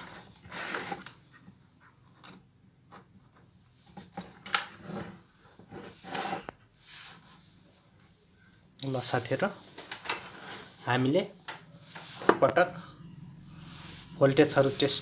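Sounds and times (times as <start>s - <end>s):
handling rubs and scrapes: 3.0s - 8.2s, 8.8s - 12.5s, 13.5s - 15.0s.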